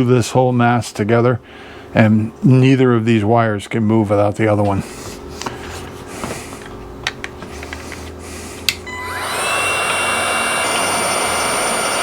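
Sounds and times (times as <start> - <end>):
heat gun fan whine: 0.0 - 12.0.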